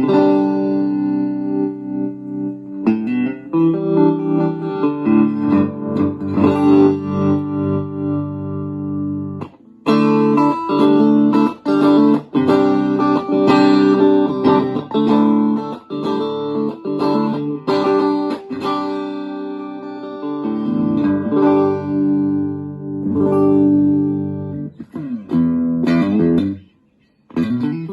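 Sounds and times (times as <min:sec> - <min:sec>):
electric guitar chords: 0:00.0 - 0:27.9.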